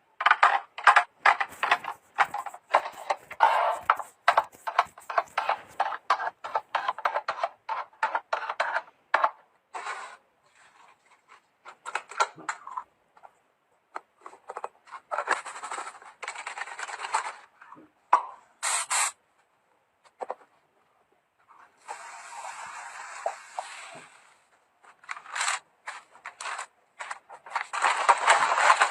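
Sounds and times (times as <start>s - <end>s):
short high hiss: 18.6s - 19.2s
packaging rustling: 24.9s - 28.9s.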